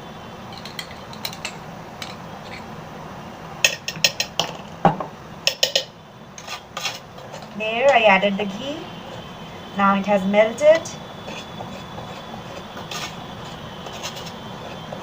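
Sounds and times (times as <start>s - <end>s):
spoon clinking on containers: 0.5s - 2.6s.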